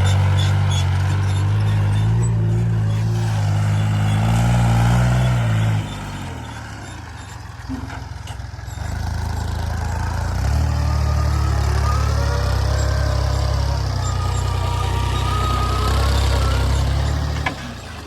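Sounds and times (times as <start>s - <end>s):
heavy diesel engine running hard: 0.0s - 18.0s.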